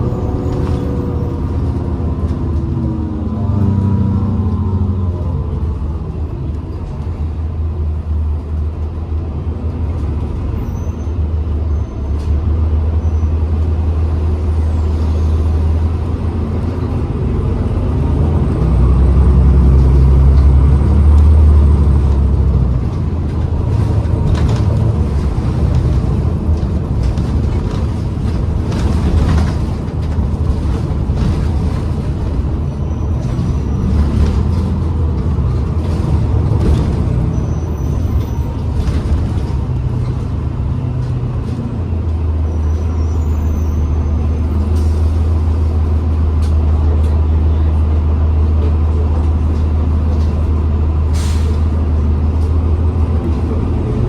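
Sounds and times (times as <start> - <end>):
bus engine drone: 0.0 - 54.0
air brake hisses: 51.2 - 51.6.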